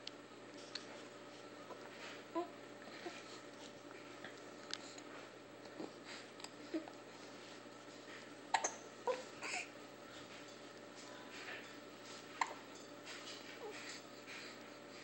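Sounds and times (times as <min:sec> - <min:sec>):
squeaky hiccups: 0:08.5 - 0:09.6.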